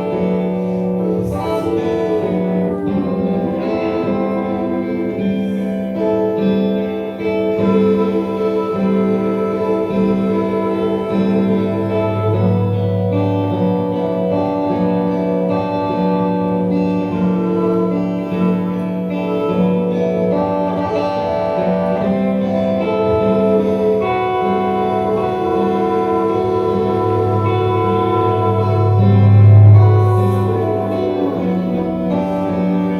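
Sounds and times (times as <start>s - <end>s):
organ-like chords: 0.0s - 32.9s
plucked guitar: 0.0s - 32.9s
sustained bass note: 7.5s - 21.3s, 21.9s - 32.9s.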